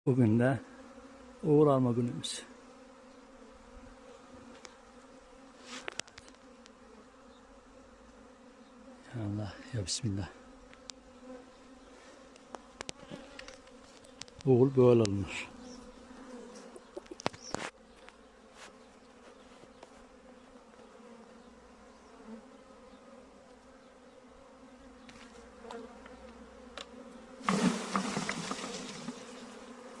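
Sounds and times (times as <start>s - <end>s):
bee swarm buzzing: 0.1s - 30.0s
loud rustling: 27.4s - 29.3s.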